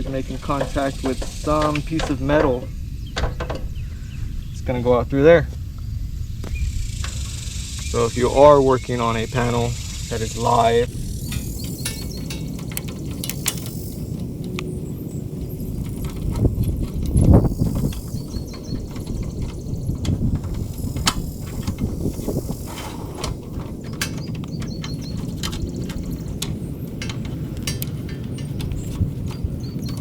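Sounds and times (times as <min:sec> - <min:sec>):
steady low rumble: 0:00.0 - 0:30.0
small clicks and metal clinks: 0:10.9 - 0:30.0.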